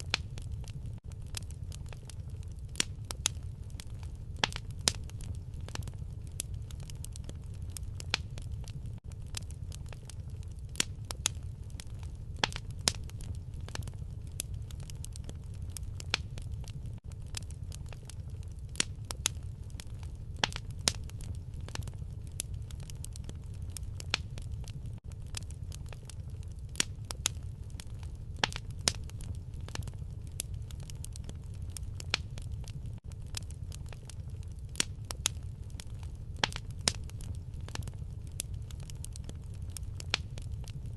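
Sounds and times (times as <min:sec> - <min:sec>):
fire crackling and popping: 0:00.0 - 0:40.9.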